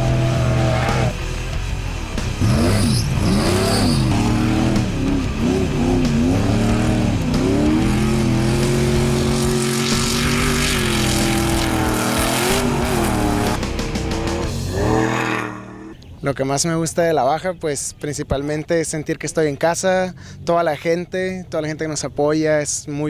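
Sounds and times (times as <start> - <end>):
truck engine revving: 0.0 - 16.0.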